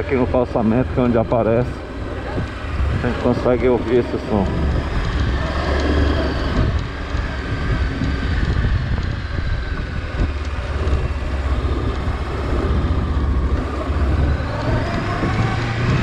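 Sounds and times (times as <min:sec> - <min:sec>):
motorcycle engine running: 0:00.0 - 0:16.0
wind on microphone: 0:00.2 - 0:16.0.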